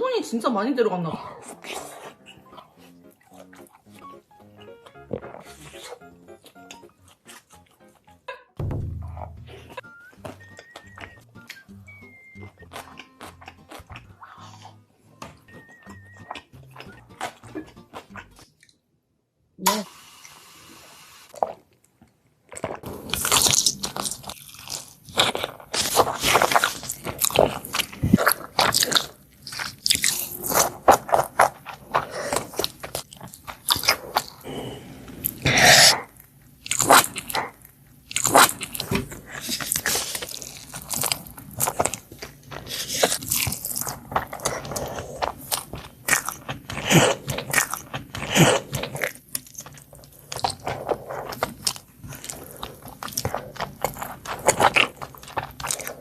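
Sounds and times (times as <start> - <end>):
person chewing crunchy food: 1.4 - 8.2, 9.6 - 18.8, 21.3 - 56.0.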